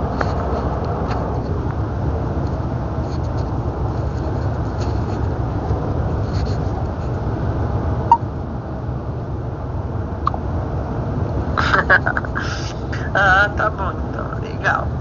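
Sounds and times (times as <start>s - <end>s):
truck cab engine and road noise: 0.0s - 15.0s.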